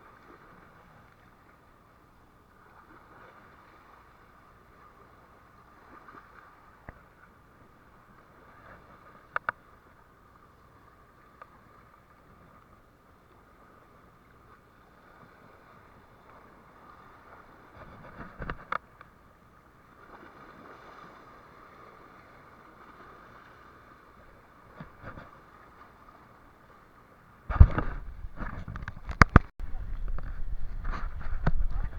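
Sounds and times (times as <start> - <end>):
faint boat hum: 0.0 - 31.9
water noise: 0.0 - 31.9
knocks on boat: 27.5 - 31.9
wind noise: 27.5 - 31.9.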